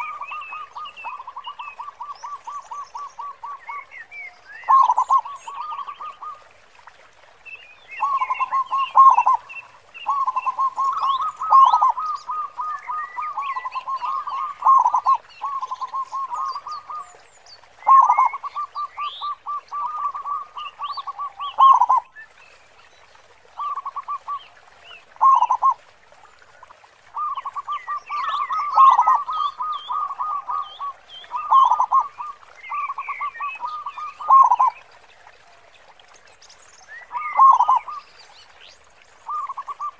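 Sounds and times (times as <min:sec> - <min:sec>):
dove cooing: 0:13.3 - 0:17.0, 0:28.6 - 0:30.7, 0:31.4 - 0:32.3, 0:32.9 - 0:34.7.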